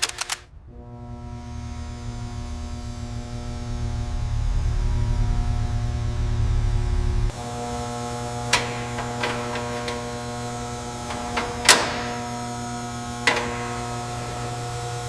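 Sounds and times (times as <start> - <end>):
sharp clicks: 0.0 - 0.5, 8.4 - 14.8
steady multi-tone hum: 0.0 - 15.0.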